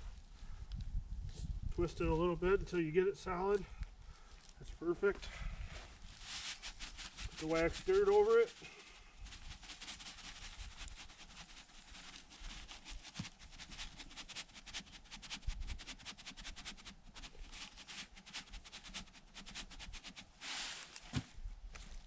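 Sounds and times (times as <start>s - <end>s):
dirt crackling over metal trap: 6.1s - 16.1s
soft thud: 21.0s - 21.4s.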